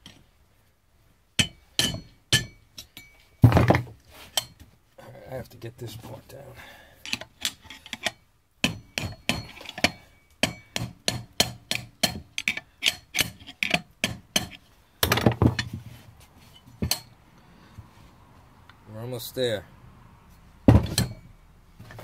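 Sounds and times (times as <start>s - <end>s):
hammer striking metal punch: 1.4s - 3.1s, 8.6s - 13.4s, 14.0s - 15.3s.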